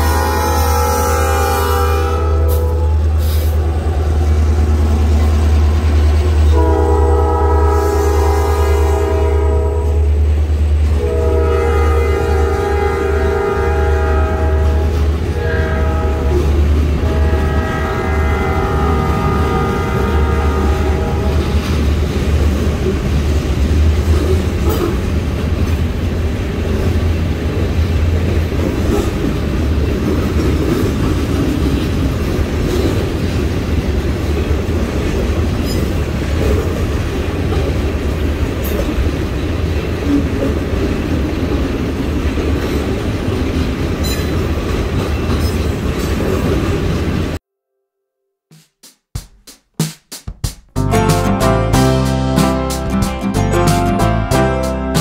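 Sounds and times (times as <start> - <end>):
train horn chord: 0.0 - 3.7, 6.5 - 10.2, 11.0 - 21.7, 50.8 - 55.0
train cars rumbling and clattering: 0.0 - 47.4.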